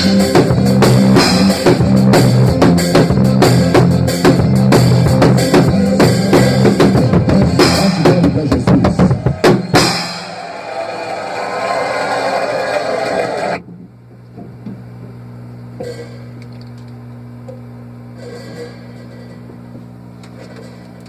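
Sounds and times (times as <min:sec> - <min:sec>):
recorded song with heavy bass: 0:00.0 - 0:10.4
drum kit playing: 0:00.0 - 0:10.8.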